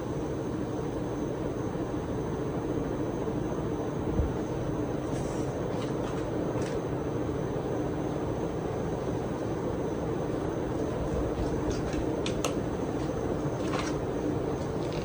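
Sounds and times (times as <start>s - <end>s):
ceiling fan whirring: 0.0s - 15.0s.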